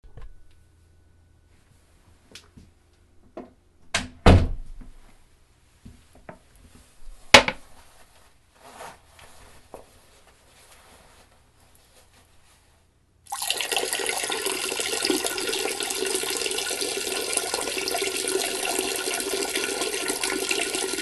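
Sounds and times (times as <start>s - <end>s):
knocks and thunks: 3.9s - 5.0s.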